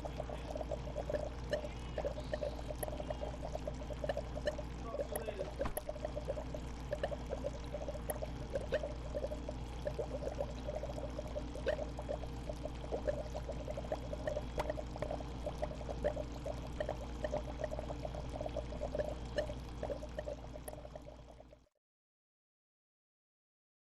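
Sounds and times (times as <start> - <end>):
steady low hum: 0.0 - 21.5
aquarium water bubbling: 0.0 - 21.7
small splashes: 1.5 - 9.3.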